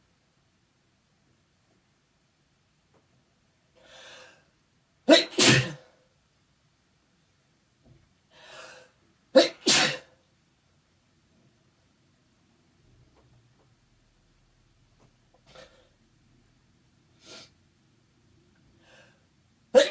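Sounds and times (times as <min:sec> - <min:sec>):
person sneezing: 0:05.1 - 0:06.0, 0:09.4 - 0:10.2.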